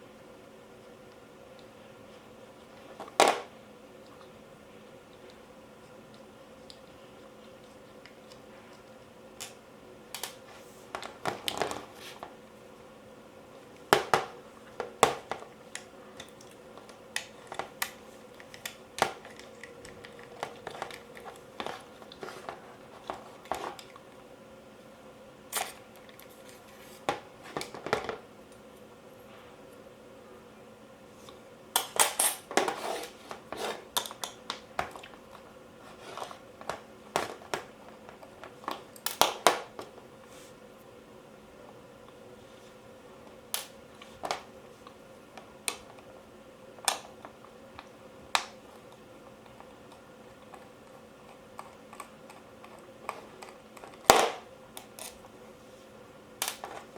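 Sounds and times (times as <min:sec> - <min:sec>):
faint steady hum: 0:00.0 - 0:56.9
clicks and clatters of parts: 0:13.9 - 0:24.0, 0:46.8 - 0:55.3, 0:56.4 - 0:56.9.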